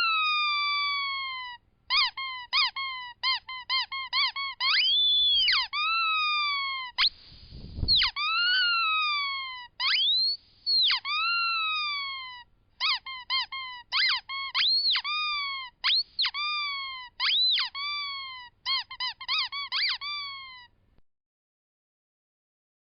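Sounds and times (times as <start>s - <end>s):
rubber squeaky toys squeaking: 0.0s - 20.7s.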